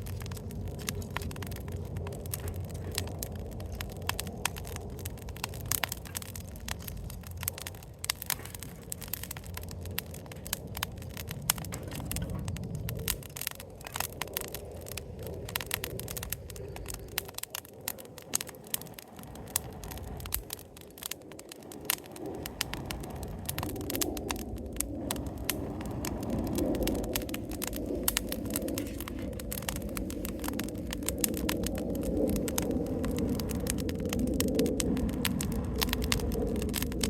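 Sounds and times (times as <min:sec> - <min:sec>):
fire pops and snaps: 0:00.0 - 0:37.0
low uneven rumble: 0:00.0 - 0:37.0
wood fire crackling: 0:00.0 - 0:37.0.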